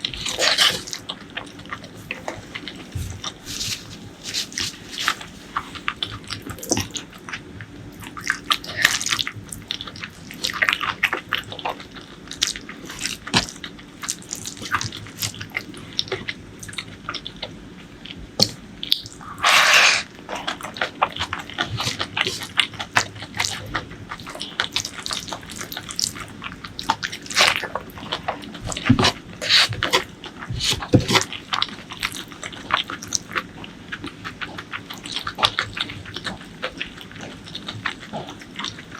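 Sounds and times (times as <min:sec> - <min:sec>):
wet chewing and lip smacks: 0:18.4 - 0:38.9.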